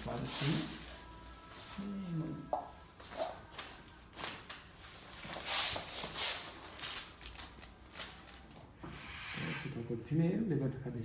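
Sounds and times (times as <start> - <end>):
padded table rustling: 0.0 - 7.2
clothing rustling: 0.0 - 8.8.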